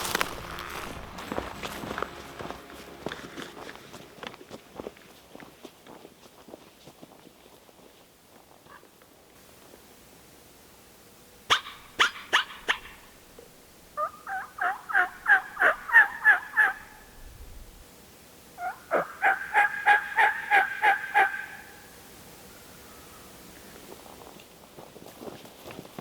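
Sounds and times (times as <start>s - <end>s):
turkey call cutts and yelps: 11.5s - 13.0s, 14.0s - 17.1s, 18.6s - 23.3s.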